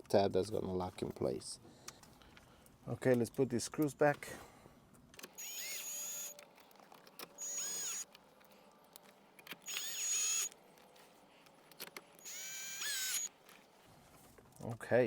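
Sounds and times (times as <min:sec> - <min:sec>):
power drill driving screws: 0:05.4 - 0:06.4, 0:07.4 - 0:08.1, 0:09.6 - 0:10.6, 0:12.2 - 0:13.3.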